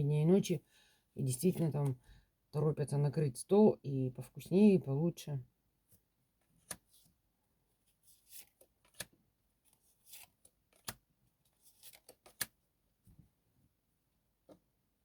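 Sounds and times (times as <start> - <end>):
cards rustling: 8.1 - 12.5.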